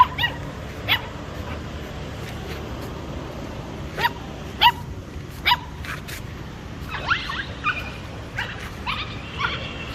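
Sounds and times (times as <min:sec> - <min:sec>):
dogs yipping: 0:00.0 - 0:01.7, 0:03.9 - 0:06.1, 0:06.8 - 0:09.9.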